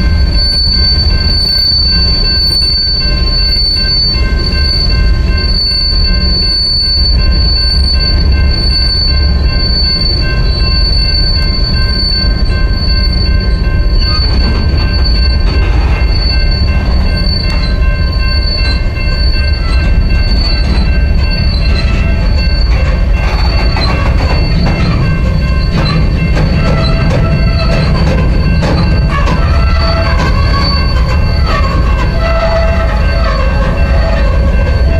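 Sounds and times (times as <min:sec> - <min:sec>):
freight train cars rumbling: 0:00.0 - 0:34.9
high-pitched wheel squeal: 0:00.0 - 0:34.9
rattling clicks from wheels: 0:19.6 - 0:34.9.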